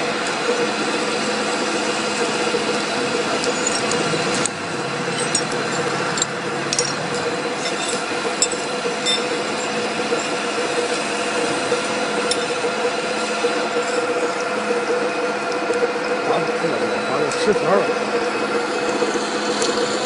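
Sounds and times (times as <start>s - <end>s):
lathe machine hum: 0.0s - 20.0s.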